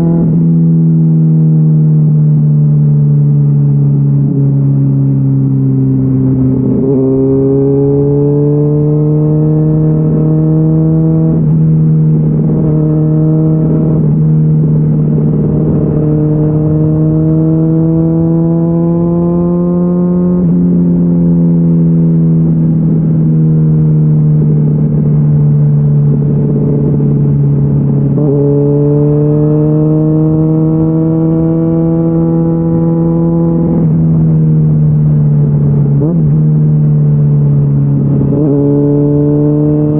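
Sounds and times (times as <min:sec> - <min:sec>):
sport bike engine revving: 0:06.6 - 0:20.5, 0:26.2 - 0:33.8, 0:37.9 - 0:39.9.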